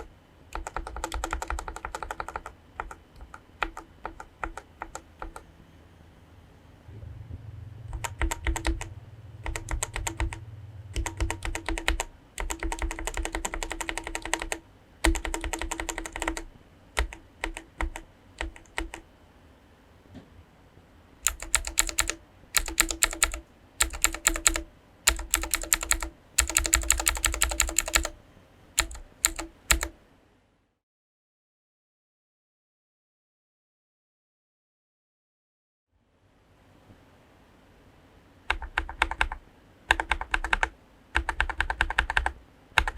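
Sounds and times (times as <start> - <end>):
clicky keyboard keystrokes: 0.0 - 5.5, 8.0 - 10.4, 11.0 - 19.0, 21.2 - 28.2, 28.8 - 29.9, 38.5 - 42.9
mechanical keyboard typing: 0.0 - 5.5, 7.9 - 19.1, 21.2 - 28.2, 28.8 - 30.0, 38.5 - 42.9.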